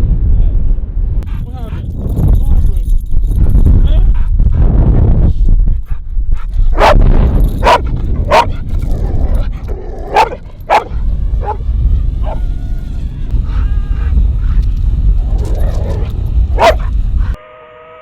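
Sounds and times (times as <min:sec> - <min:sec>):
wind on microphone: 0:00.0 - 0:17.4
dog barking: 0:06.7 - 0:11.6, 0:12.2 - 0:12.5, 0:15.3 - 0:17.4.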